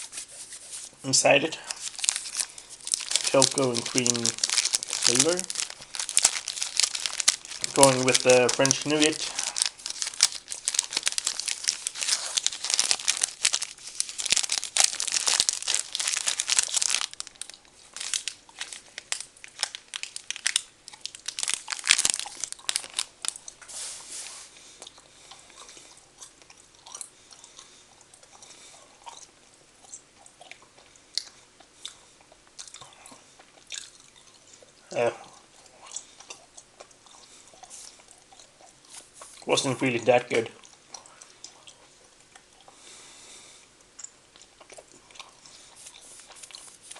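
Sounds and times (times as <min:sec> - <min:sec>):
wrapper crinkling: 0:01.4 - 0:24.0
chewing candy bar: 0:01.7 - 0:23.6, 0:24.6 - 0:39.6, 0:40.4 - 0:43.1, 0:43.7 - 0:46.9.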